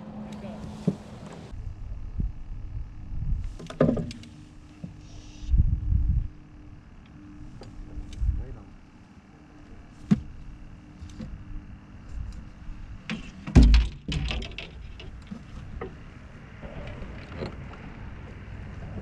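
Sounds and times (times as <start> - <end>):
steady low hum: 0.0 - 19.0
fishing gear knocking and clattering: 13.1 - 16.0.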